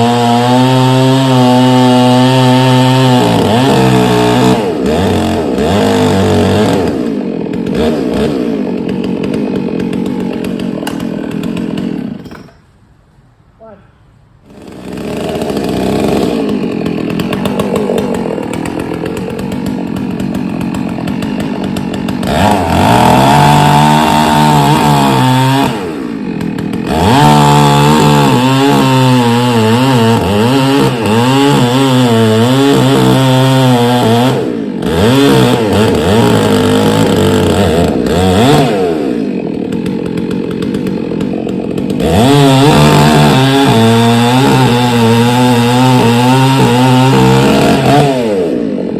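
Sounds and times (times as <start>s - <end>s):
chainsaw cutting wood: 0.0s - 12.8s, 14.4s - 48.9s.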